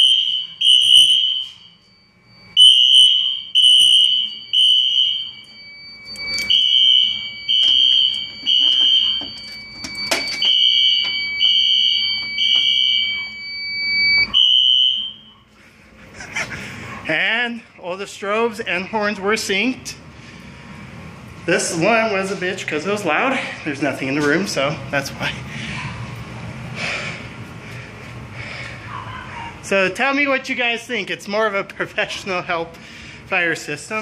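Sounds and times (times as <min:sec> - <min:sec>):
fire alarm horn blasts: 0:00.0 - 0:15.5
steady high tone: 0:00.0 - 0:15.6.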